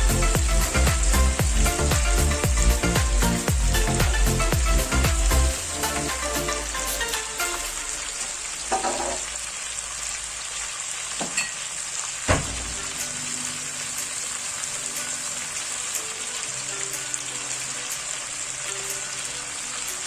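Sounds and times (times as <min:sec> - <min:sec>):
chicken sizzling in a pan: 0:00.0 - 0:20.0.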